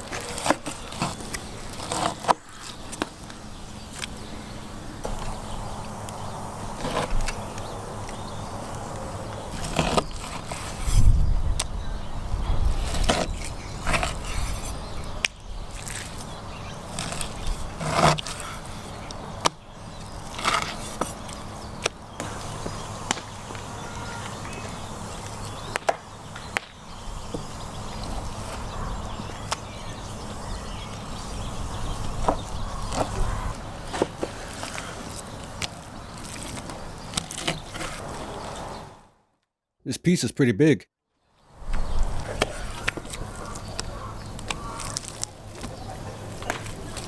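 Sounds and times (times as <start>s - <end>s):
knife scraping: 9.5s - 11.2s, 12.8s - 14.9s, 16.9s - 19.1s, 20.2s - 21.4s.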